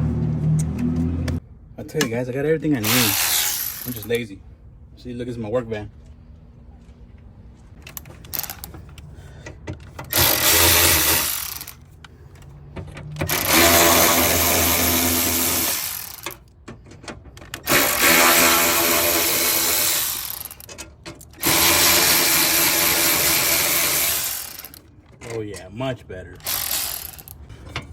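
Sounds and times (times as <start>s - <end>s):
power drill spinning out bolts: 2.8s - 4.2s, 7.9s - 9.0s, 10.1s - 11.8s, 13.3s - 16.5s, 17.6s - 24.9s, 26.4s - 27.4s
small clicks and handling knocks: 7.7s - 10.2s, 16.2s - 17.7s.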